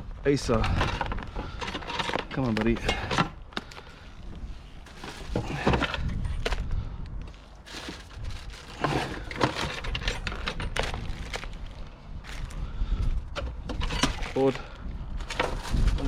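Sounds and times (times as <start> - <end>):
junk clattering and knocking: 5.1 - 6.1, 8.7 - 11.4, 13.3 - 14.4.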